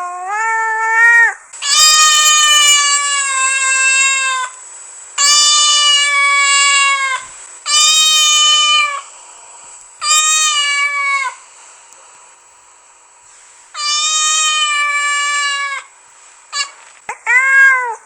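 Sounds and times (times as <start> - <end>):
cat meowing: 0.0 - 4.5, 5.2 - 9.0, 10.0 - 11.4, 13.8 - 15.9, 16.6 - 18.0.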